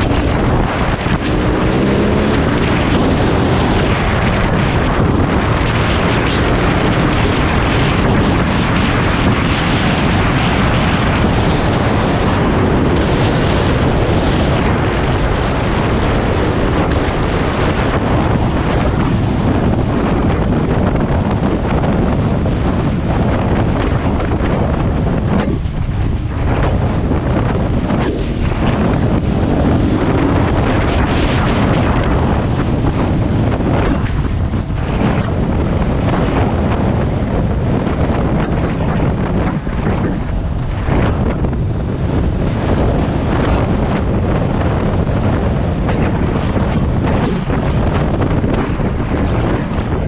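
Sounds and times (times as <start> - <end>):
wind buffeting microphone: 0.0 - 50.0.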